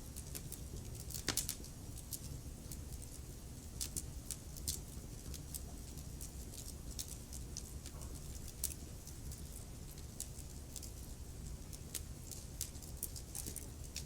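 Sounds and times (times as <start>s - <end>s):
low rumble of burning logs: 0.0s - 14.0s
wood fire crackling: 0.0s - 14.0s.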